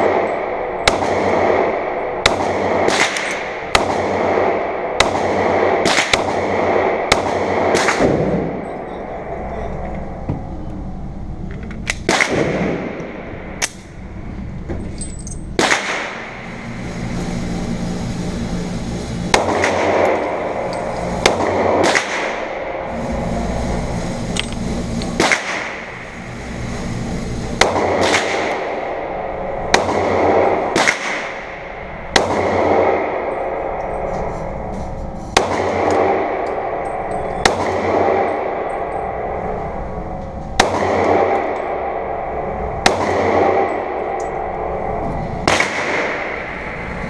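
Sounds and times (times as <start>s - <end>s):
pistol shots: 0.0s - 8.6s, 11.9s - 13.8s, 15.6s - 16.3s, 19.3s - 20.5s, 21.2s - 22.6s, 25.2s - 25.8s, 29.7s - 31.5s, 32.1s - 33.1s, 35.4s - 36.4s, 37.4s - 38.5s, 40.6s - 41.5s, 42.8s - 43.9s, 45.4s - 46.5s
steady background noise: 0.0s - 47.0s.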